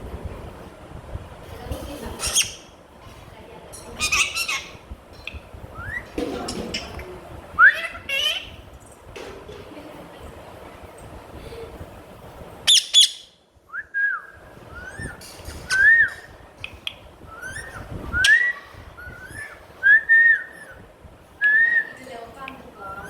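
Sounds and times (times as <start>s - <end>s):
parrot screeching: 2.2s - 2.6s, 4.0s - 4.8s, 7.7s - 8.6s, 12.7s - 13.3s
parrot whistling gliding notes: 17.3s - 20.8s.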